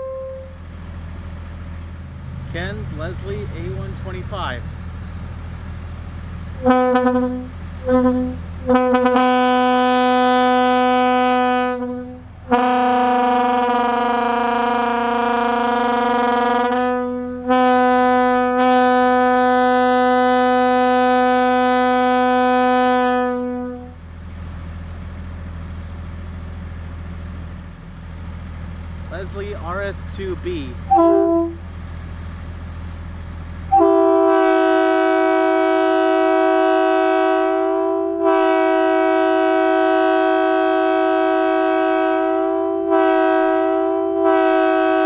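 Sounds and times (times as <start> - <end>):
locomotive air horn blasts: 0.0 - 0.7, 6.5 - 24.1, 29.2 - 31.7, 33.7 - 45.0.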